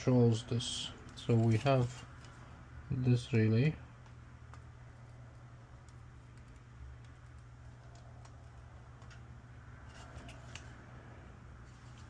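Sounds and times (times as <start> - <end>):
steady low hum: 0.0 - 12.0
probe tip tapping and scraping: 4.0 - 10.7.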